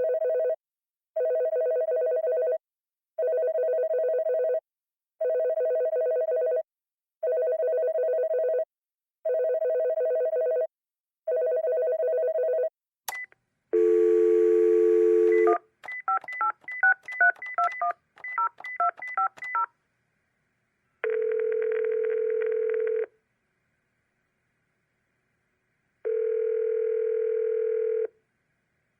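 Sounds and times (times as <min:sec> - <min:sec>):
dial tone: 0:13.8 - 0:15.6, 0:21.0 - 0:23.1, 0:26.1 - 0:28.1
telephone ringing: 0:13.8 - 0:19.7, 0:21.0 - 0:23.1, 0:26.1 - 0:28.1
touch-tone keypad beeps: 0:15.3 - 0:19.7
phone click: 0:15.8 - 0:19.6.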